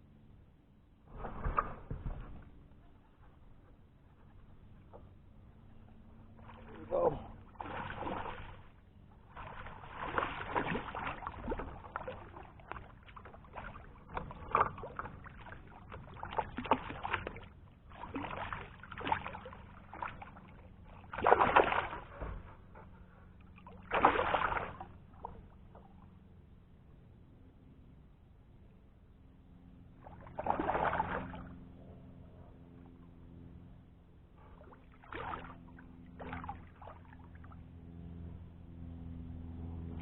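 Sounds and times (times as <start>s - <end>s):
paddle strokes splashing water: 4.2s - 22.7s, 23.5s - 26.1s, 30.0s - 31.6s, 34.4s - 37.6s.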